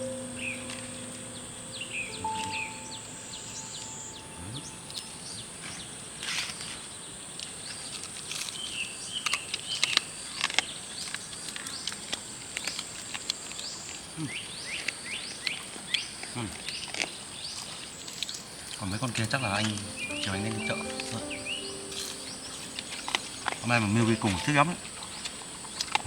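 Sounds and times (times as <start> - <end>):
bird chirps: 0.0 - 5.9, 19.2 - 25.3.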